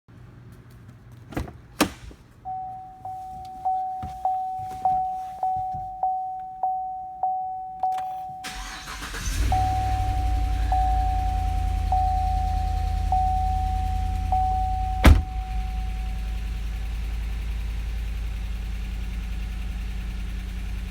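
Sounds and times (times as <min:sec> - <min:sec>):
vehicle warning chime: 0:02.4 - 0:17.1
car engine starting and idling: 0:07.8 - 0:20.9.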